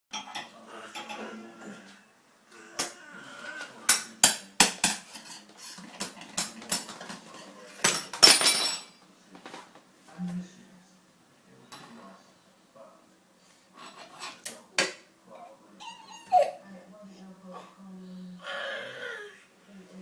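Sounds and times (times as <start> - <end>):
metal spoon clinking on dishwasher: 3.9 - 9.0.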